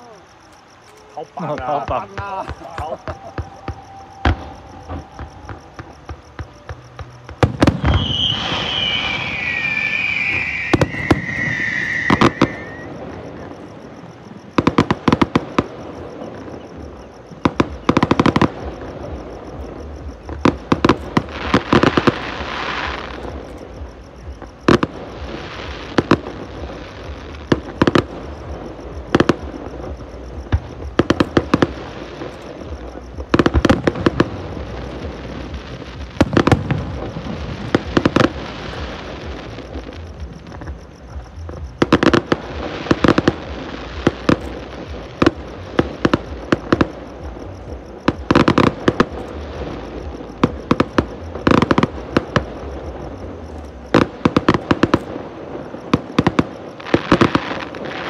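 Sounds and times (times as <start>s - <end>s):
fireworks bursts and bangs: 0.0s - 58.0s
fireworks crackling: 0.0s - 58.0s
falling firework whistle: 0.8s - 23.7s.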